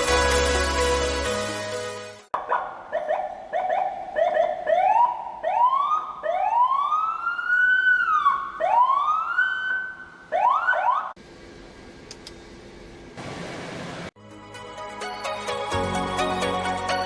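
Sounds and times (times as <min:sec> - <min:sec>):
electronic vehicle siren whooping: 0:02.9 - 0:11.2.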